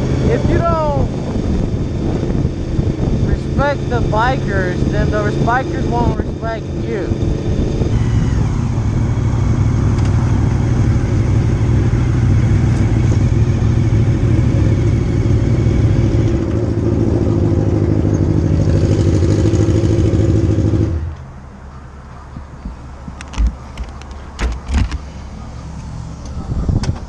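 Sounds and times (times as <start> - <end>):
wind rushing over microphone: 0.0 - 20.8, 22.3 - 25.4, 26.1 - 27.0
motorcycle engine cruising: 0.0 - 27.0.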